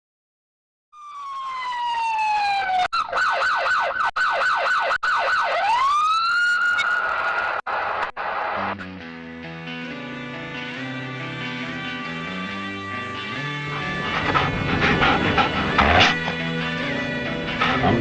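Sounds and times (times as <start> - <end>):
electronic police siren: 1.0 - 7.6.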